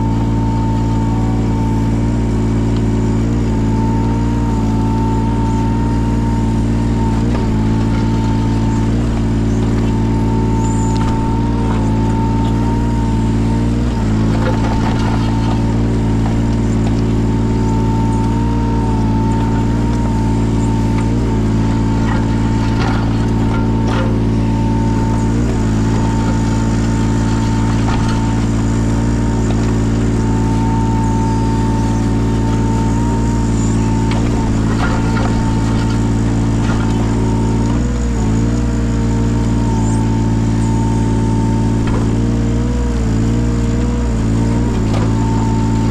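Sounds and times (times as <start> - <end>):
diesel engine running: 0.0 - 45.9
faint clatter: 32.3 - 38.1.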